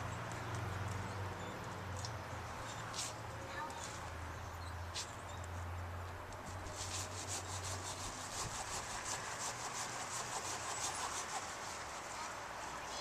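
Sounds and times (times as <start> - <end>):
hand saw cutting tree limb: 6.4 - 12.4.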